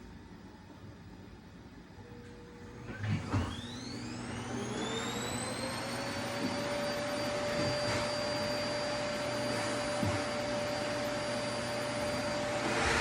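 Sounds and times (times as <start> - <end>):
vacuum cleaner running: 0.0 - 13.0.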